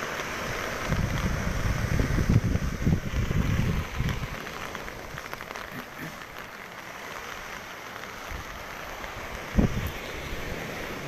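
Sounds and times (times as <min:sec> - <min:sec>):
light rain hiss: 0:00.0 - 0:11.0
surf: 0:00.0 - 0:11.0
wind buffeting microphone: 0:00.3 - 0:05.6, 0:08.2 - 0:11.0.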